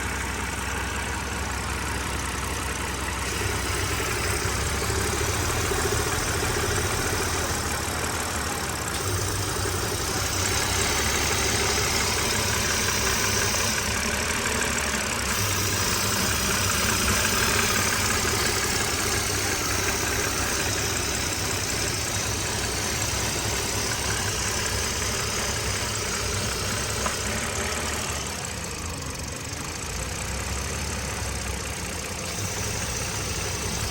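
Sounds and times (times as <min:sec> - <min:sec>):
car engine idling: 0:00.0 - 0:33.9
steady intake hiss: 0:15.2 - 0:27.6.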